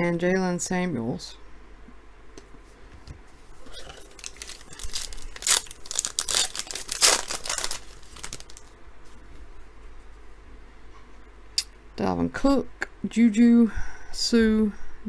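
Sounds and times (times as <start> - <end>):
foil wrapper tearing and crinkling: 3.8 - 8.7.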